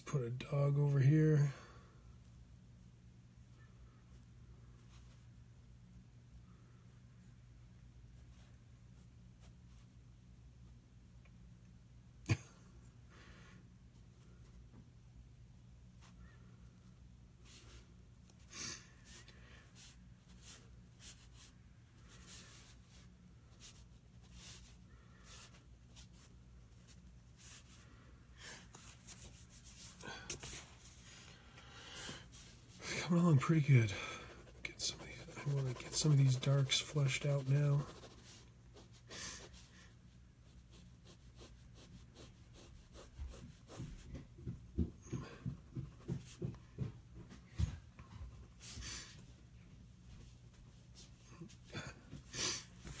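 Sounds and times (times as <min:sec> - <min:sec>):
low steady hum: 0:00.0 - 0:53.0
pen scratching on paper: 0:33.9 - 0:39.7, 0:40.5 - 0:44.0.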